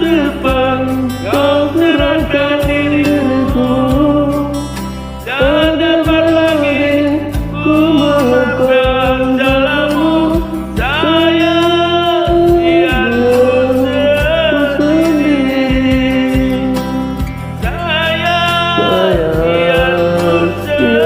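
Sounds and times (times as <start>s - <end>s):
karaoke backing music: 0.0s - 21.0s
melody of long held notes: 14.1s - 21.0s.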